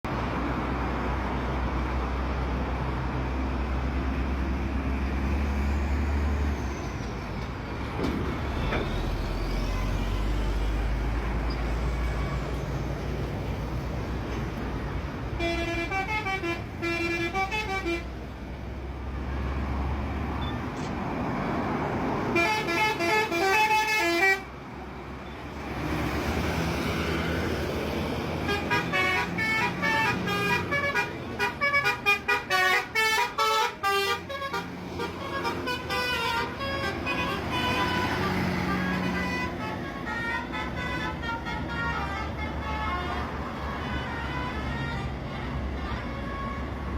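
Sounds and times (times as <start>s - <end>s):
bus engine rumbling: 0.0s - 46.9s
traffic rumble: 0.0s - 46.9s
melodic bus horn: 15.3s - 18.4s, 22.2s - 24.6s, 28.3s - 46.9s.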